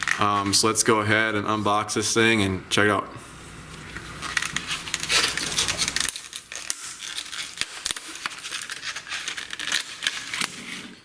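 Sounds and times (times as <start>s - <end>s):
packaging being torn open: 4.2s - 11.0s.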